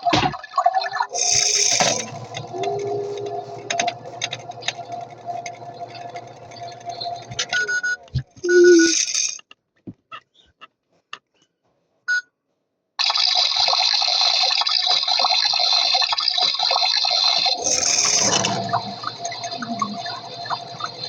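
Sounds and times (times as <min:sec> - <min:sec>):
toy washing machine rushing: 0:01.0 - 0:09.4, 0:13.3 - 0:21.0
toy washing machine beeping: 0:01.1 - 0:09.4, 0:17.4 - 0:21.0
clicks: 0:01.2 - 0:09.0.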